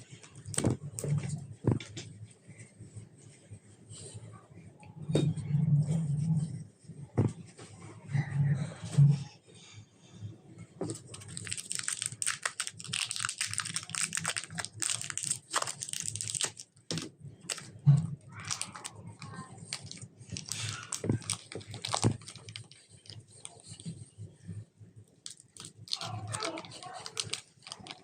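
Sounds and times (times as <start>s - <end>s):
slime crackling and squelching: 11.0s - 24.0s, 25.2s - 28.0s.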